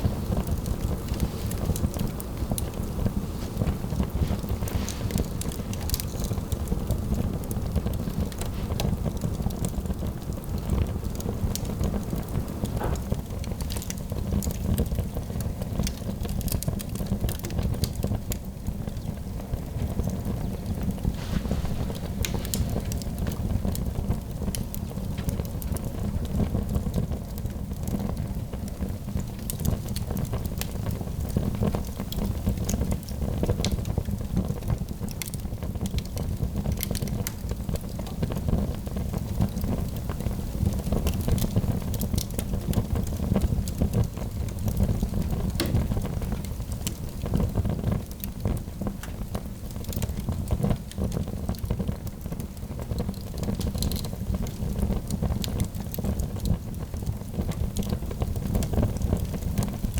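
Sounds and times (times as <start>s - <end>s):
wood fire crackling: 0.0s - 59.9s
sharp pops: 45.6s - 46.1s.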